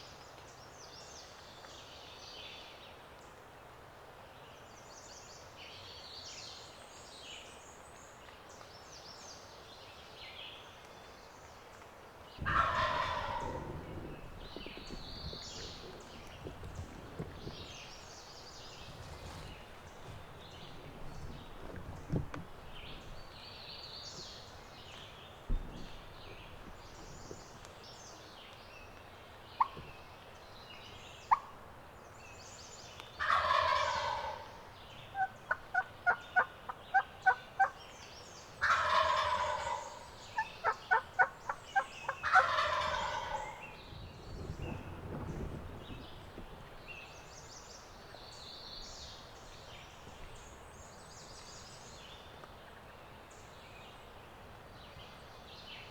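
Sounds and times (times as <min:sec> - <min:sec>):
songbirds chattering: 0:12.3 - 0:54.2
turkey gobbling: 0:12.4 - 0:17.6, 0:29.6 - 0:29.9, 0:31.3 - 0:31.5, 0:33.2 - 0:37.8, 0:38.6 - 0:43.7.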